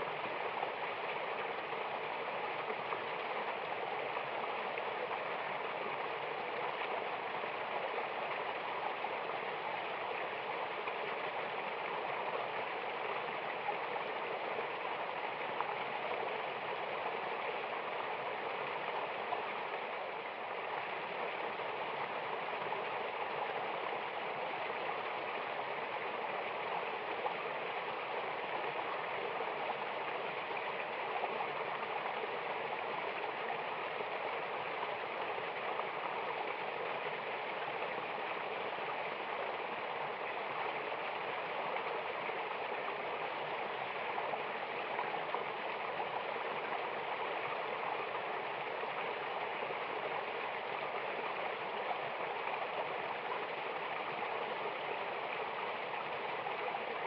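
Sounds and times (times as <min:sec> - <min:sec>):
river water rushing over rocks: 0:00.0 - 0:57.0.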